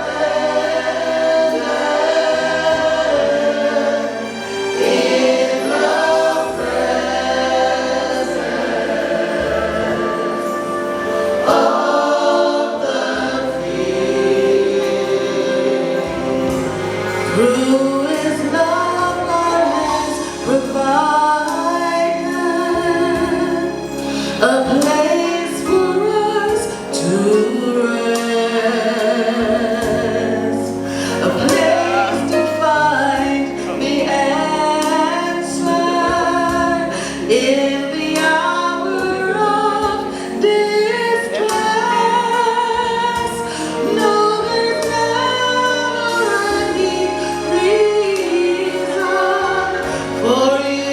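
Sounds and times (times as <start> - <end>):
musical accompaniment: 0.0 - 50.9
woman singing gospel: 17.3 - 50.9.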